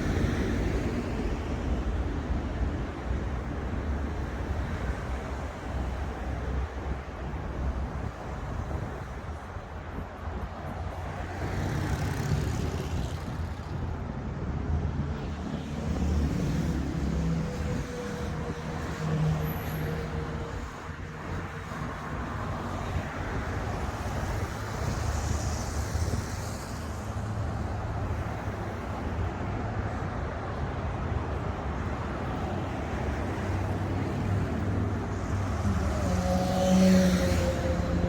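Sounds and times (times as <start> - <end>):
loud vehicle engine hum: 10.6 - 38.0
cars driving past: 10.7 - 14.6, 21.2 - 38.0.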